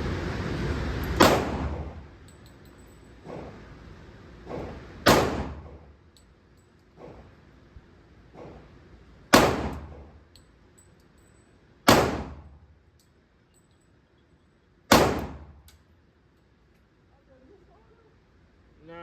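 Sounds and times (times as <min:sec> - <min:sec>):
pistol shots with echo: 0:01.2 - 0:01.9, 0:05.0 - 0:05.7, 0:09.3 - 0:10.0, 0:11.9 - 0:12.5, 0:14.9 - 0:15.5.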